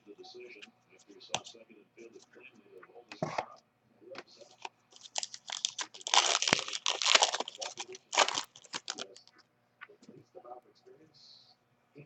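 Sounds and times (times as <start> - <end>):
wrapper tearing and crinkling: 4.5 - 9.3.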